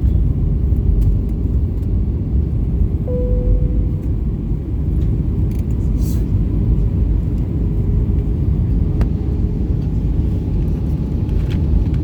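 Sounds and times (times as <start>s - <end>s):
airplane cabin engine rumble: 0.0s - 12.0s
cabin chime: 3.1s - 4.0s.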